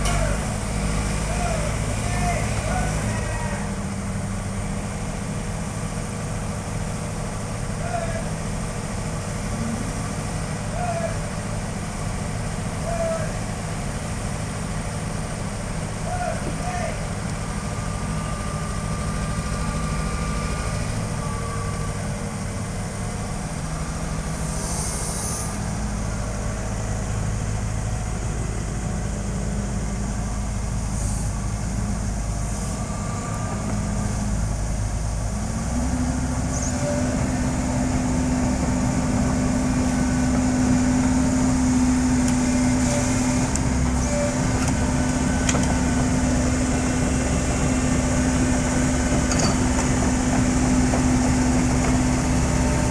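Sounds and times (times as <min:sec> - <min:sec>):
excavator diesel engine running: 0:00.0 - 0:52.9
faint metal clanks: 0:49.1 - 0:50.4.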